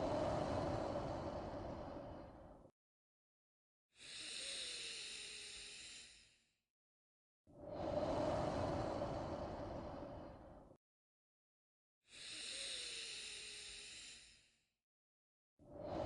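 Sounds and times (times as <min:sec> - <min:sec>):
slow human breathing: 0:00.0 - 0:02.7, 0:04.0 - 0:06.4, 0:07.6 - 0:10.8, 0:12.1 - 0:14.6.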